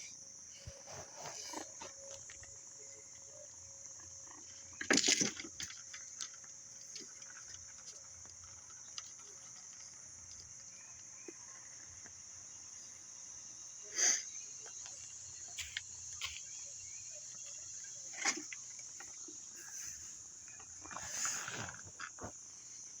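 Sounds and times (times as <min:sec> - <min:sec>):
kittens scuffling: 0:00.6 - 0:02.5.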